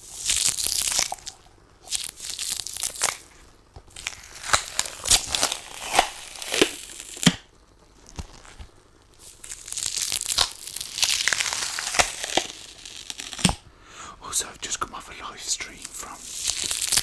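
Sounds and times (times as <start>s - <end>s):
lint roller sheet crackling: 16.2s - 17.0s.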